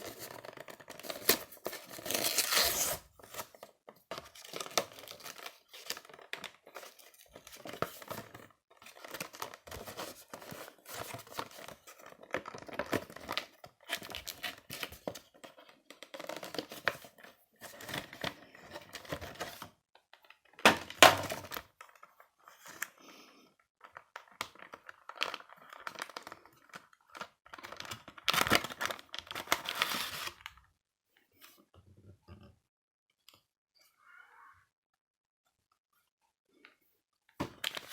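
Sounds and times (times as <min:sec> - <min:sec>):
packaging crinkling and tearing: 0:00.0 - 0:15.2, 0:23.9 - 0:30.5.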